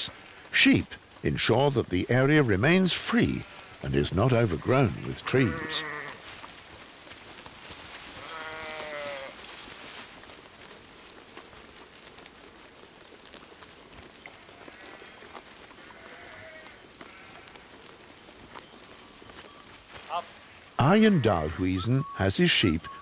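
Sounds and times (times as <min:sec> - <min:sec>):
sheep bleating: 0:00.0 - 0:06.3, 0:08.2 - 0:09.4, 0:14.4 - 0:17.7, 0:20.0 - 0:23.0.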